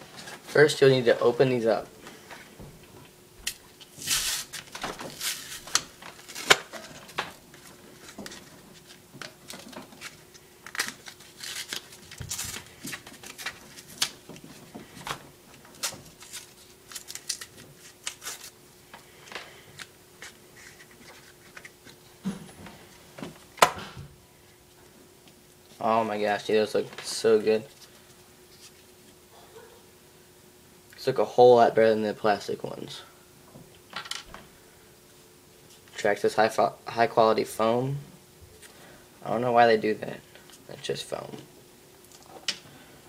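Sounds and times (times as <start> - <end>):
faint steady hum: 0.0 - 43.0
packaging crinkling and tearing: 3.5 - 18.6.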